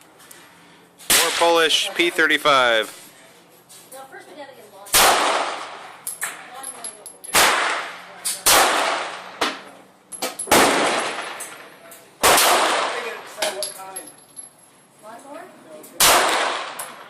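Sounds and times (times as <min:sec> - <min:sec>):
pistol shots with echo: 0:05.0 - 0:05.8, 0:07.3 - 0:09.4, 0:10.5 - 0:11.4, 0:12.2 - 0:13.2, 0:16.0 - 0:17.0.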